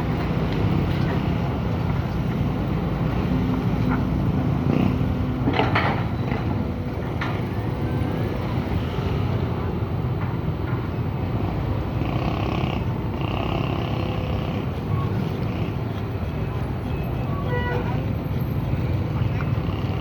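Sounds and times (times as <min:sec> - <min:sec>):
excavator diesel engine running: 0:00.0 - 0:20.0.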